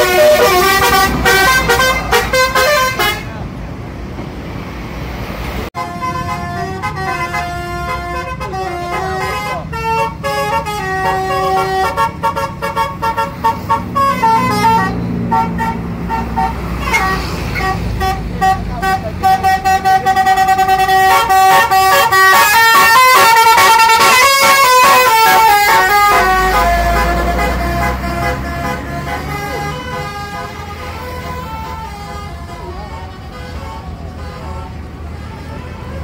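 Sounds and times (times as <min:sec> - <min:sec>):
bus trumpet horns playing tune: 0:00.0 - 0:03.4, 0:05.8 - 0:36.0
low engine rumble: 0:23.4 - 0:36.0.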